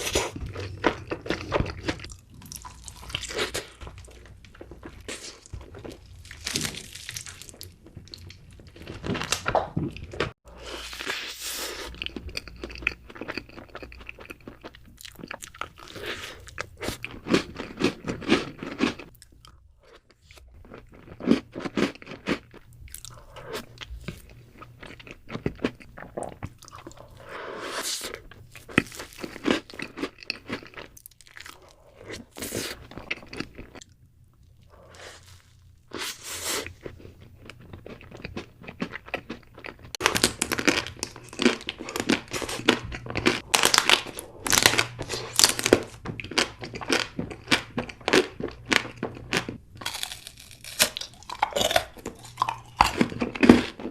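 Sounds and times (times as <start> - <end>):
crunchy chewing: 34.6 - 53.9.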